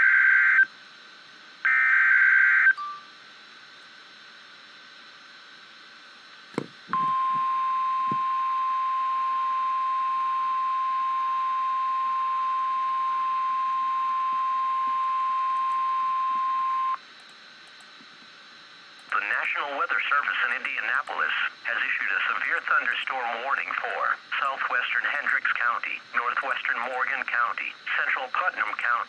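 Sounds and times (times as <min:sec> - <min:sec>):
faint radio hiss: 0:09.0 - 0:29.0
click: 0:17.2 - 0:17.9, 0:19.0 - 0:19.2.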